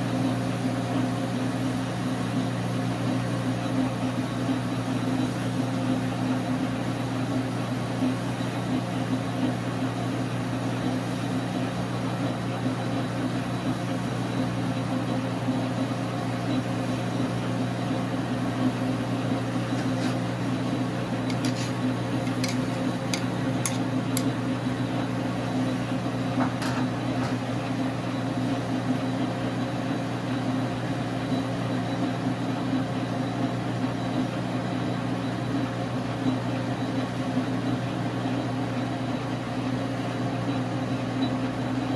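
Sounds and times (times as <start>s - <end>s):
metal lathe motor and gear hum: 16.9s - 28.5s.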